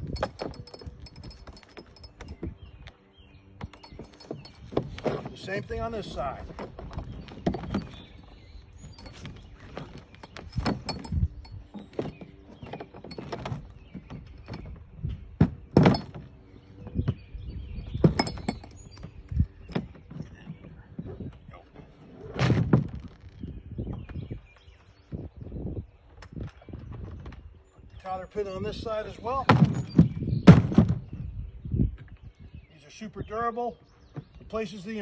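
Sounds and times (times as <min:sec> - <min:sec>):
kayak fasteners knocking and clacking: 0:00.0 - 0:05.4, 0:06.4 - 0:08.2, 0:08.8 - 0:14.8, 0:15.4 - 0:17.2, 0:17.9 - 0:21.4.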